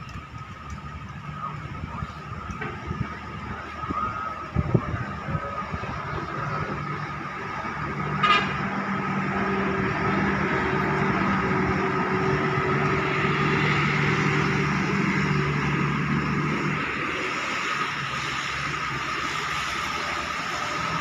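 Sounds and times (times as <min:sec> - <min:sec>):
vehicle engines humming: 0:00.0 - 0:21.0
car horn toot: 0:08.2 - 0:08.6.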